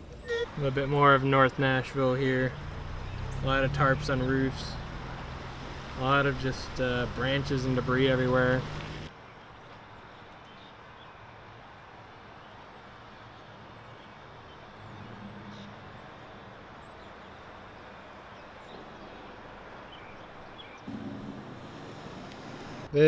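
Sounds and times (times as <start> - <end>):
distant traffic hum: 0.0 - 23.0
background hiss: 20.9 - 23.0.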